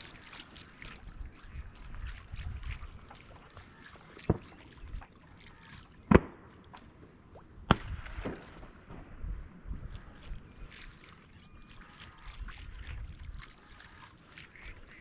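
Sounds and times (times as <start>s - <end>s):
shotgun shots: 6.1s - 6.5s.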